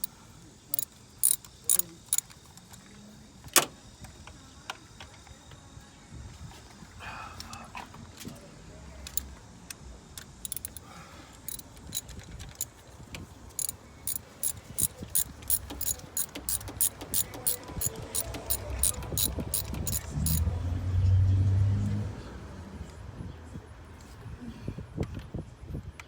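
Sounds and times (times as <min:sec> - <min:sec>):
ratchet wrench clicking: 0:00.7 - 0:02.3, 0:10.4 - 0:10.9, 0:11.5 - 0:12.7, 0:13.6 - 0:20.4.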